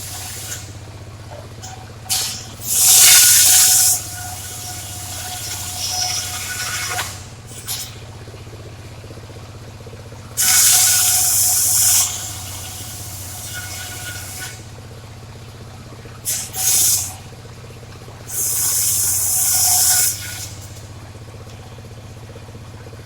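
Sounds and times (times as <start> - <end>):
saw blade cutting wood hissing: 0.0 - 0.8, 2.1 - 8.0, 10.4 - 14.6, 16.3 - 17.2, 18.3 - 20.8
circular saw running: 0.0 - 8.2, 10.3 - 14.8, 16.2 - 17.3, 18.2 - 21.0.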